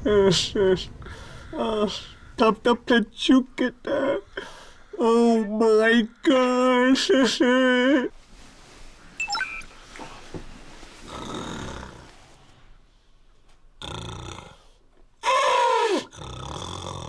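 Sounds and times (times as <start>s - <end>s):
man snoring through gas mask: 13.8s - 14.8s, 16.0s - 17.0s.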